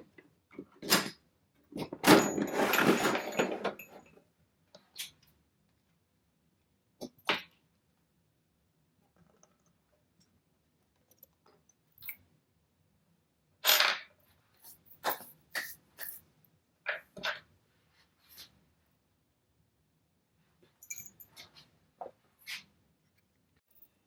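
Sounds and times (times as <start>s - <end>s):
tools set down on workbench: 1.8s - 4.1s.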